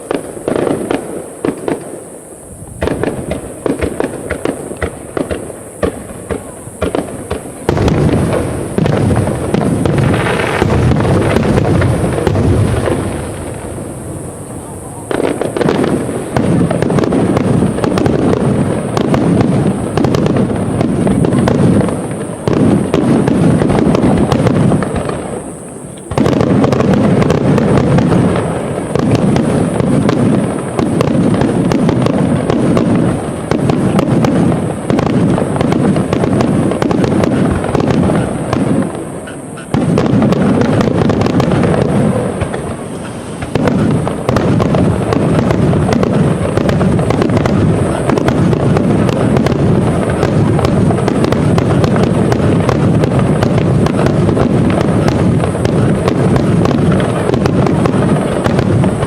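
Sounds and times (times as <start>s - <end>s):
fireworks shell bursts: 42.4s - 44.1s.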